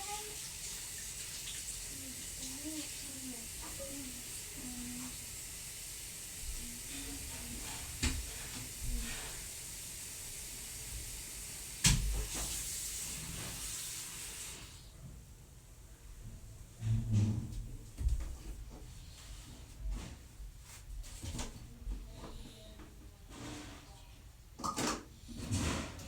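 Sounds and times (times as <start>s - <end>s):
water running: 0.0s - 14.8s.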